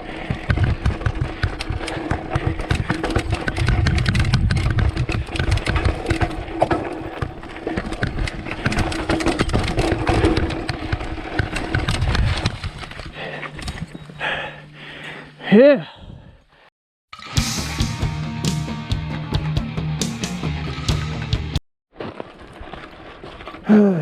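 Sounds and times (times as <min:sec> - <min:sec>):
wind rumbling on microphone: 0:00.0 - 0:06.2
bike tyres rolling over rocks: 0:00.0 - 0:14.0, 0:21.9 - 0:23.7
bike rattling: 0:00.0 - 0:14.4, 0:22.0 - 0:23.7.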